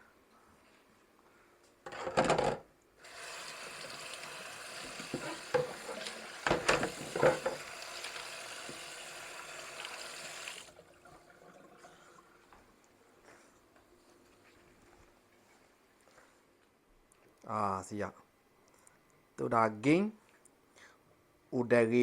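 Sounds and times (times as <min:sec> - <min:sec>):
kitchen rustle or clatter: 0:04.9 - 0:07.7
dishes or utensils knocking: 0:05.1 - 0:07.6.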